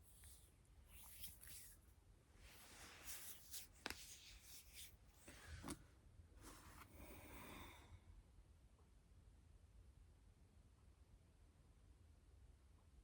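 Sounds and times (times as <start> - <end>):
faint rubbing and breathing: 0.0 - 1.8, 2.4 - 8.0.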